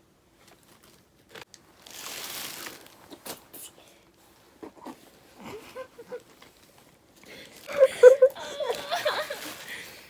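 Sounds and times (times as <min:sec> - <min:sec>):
paper crinkling and rustling: 0:00.4 - 0:03.4.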